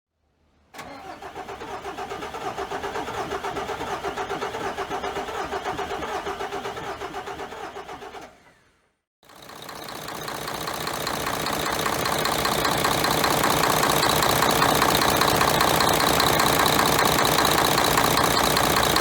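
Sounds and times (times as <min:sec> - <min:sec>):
diesel engine idling with knock: 0:09.2 - 0:19.0.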